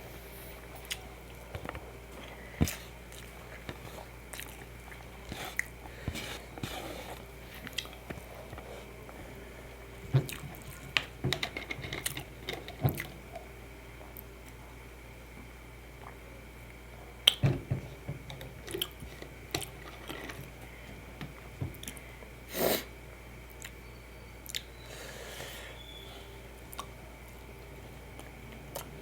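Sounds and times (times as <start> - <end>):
chewing and biting: 0.6 - 9.0, 18.6 - 20.6, 26.7 - 27.5.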